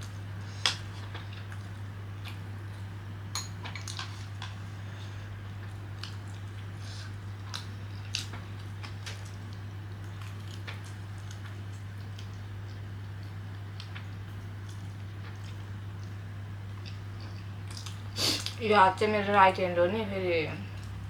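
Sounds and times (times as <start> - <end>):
person chewing: 3.7 - 18.6.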